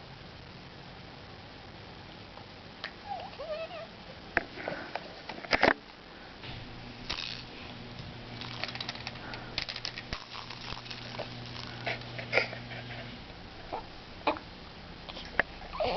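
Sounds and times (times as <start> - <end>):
faint steady hum: 0.0 - 15.9.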